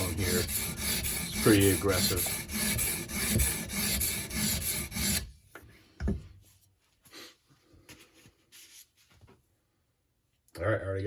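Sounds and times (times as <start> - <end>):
stone rasping along knife edge: 0.0 - 5.3.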